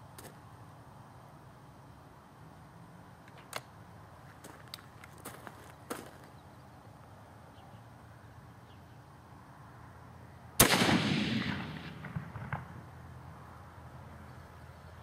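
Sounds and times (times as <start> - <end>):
faint sharp cracks: 10.6 - 12.8
muzzleloader gunshot with echo: 10.6 - 12.9.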